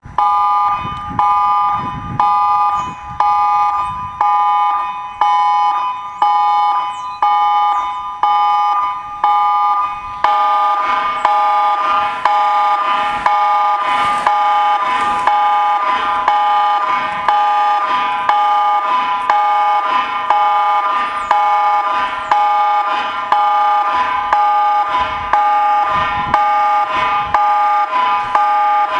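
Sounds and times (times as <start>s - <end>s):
pulsing emergency alert tones: 0.0s - 28.9s.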